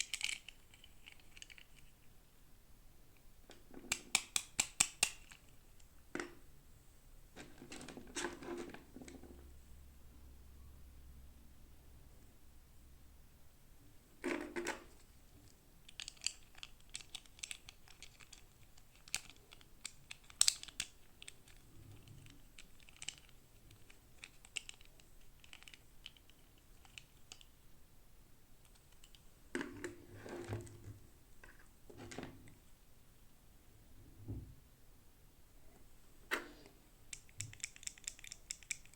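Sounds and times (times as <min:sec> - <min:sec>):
plastic pieces clicking and tapping: 0:00.0 - 0:01.9, 0:03.5 - 0:05.9, 0:15.5 - 0:27.5, 0:37.1 - 0:38.9.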